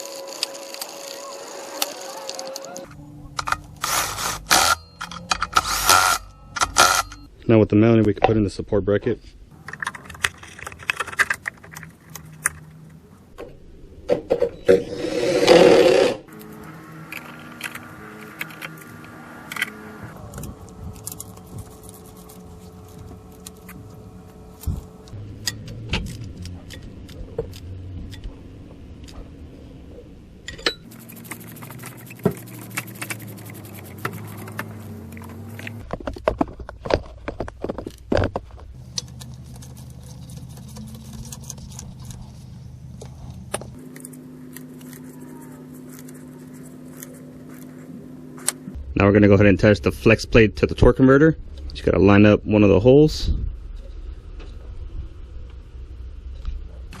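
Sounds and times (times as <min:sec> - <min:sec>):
metal tools clinking on bolts: 0:30.5 - 0:30.9.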